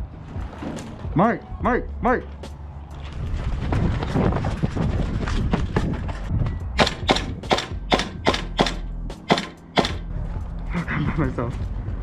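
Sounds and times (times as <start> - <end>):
airsoft gun shots: 6.8 - 10.0.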